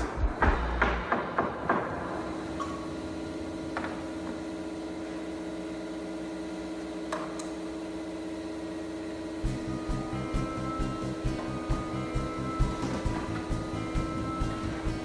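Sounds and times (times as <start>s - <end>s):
rhythmic music beat: 0.0s - 1.1s, 9.4s - 15.0s
small motor humming: 2.6s - 15.0s.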